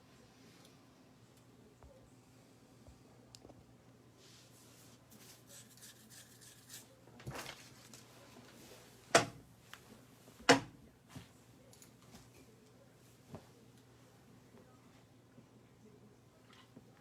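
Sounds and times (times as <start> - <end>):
rustling and handling noises: 2.8 - 15.5.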